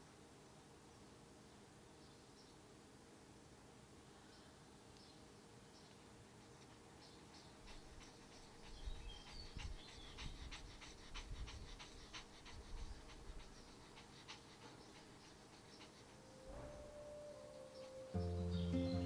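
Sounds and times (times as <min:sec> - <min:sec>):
small dog panting: 0:06.4 - 0:19.0.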